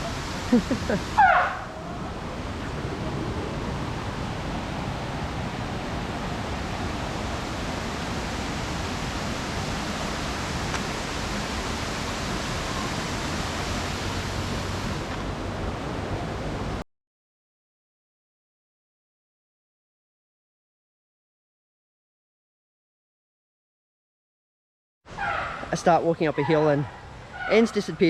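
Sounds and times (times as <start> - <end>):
steady rushing noise: 0.0 - 16.8.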